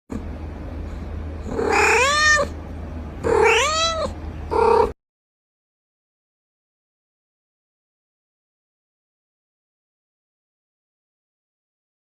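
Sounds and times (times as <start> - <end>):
steady low hum: 0.1 - 5.0
cat meowing: 1.5 - 2.6, 3.2 - 5.0.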